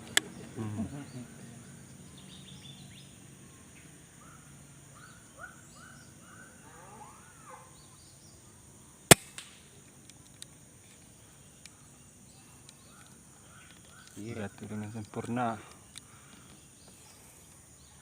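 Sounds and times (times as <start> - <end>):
birds calling: 0.0 - 18.0
air rifle shot: 9.1 - 9.6
faint clicks: 12.6 - 17.6.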